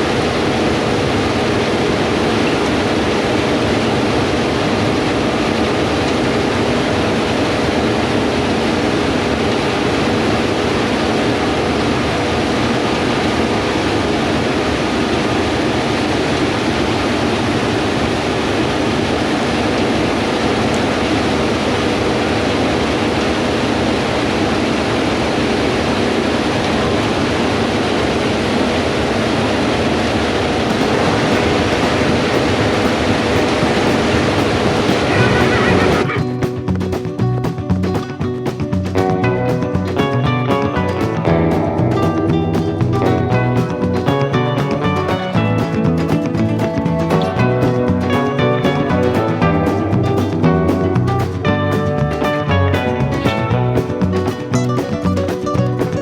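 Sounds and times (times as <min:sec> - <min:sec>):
diesel machinery drone: 0:30.7 - 0:36.2.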